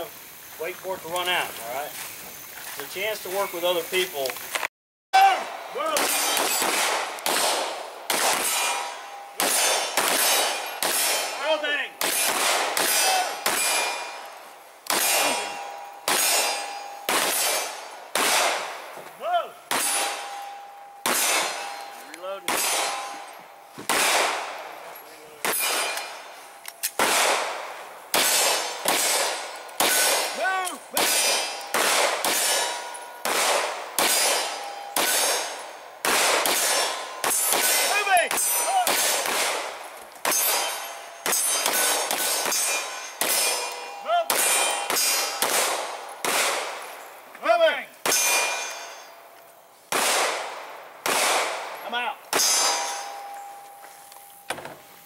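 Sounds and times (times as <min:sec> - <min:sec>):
rounds clanging on steel targets: 0:05.2 - 0:55.0
pistol shots: 0:05.4 - 0:19.0, 0:19.7 - 0:20.4, 0:21.0 - 0:21.8, 0:22.4 - 0:47.0, 0:49.9 - 0:53.1.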